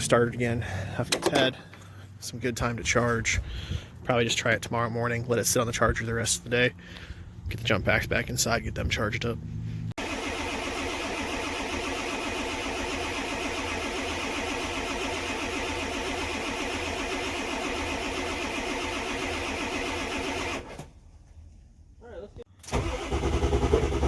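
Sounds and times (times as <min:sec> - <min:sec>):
diesel engine clatter: 0:22.8 - 0:24.0.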